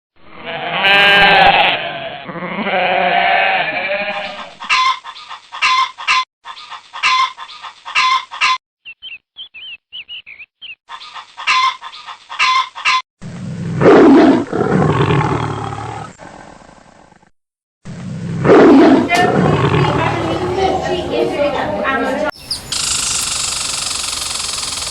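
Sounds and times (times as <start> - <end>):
goat bleating: 0.5 - 4.9
high chirping: 22.3 - 24.9
long loud animal call: 22.4 - 24.9
short repeated animal calls: 22.4 - 24.9.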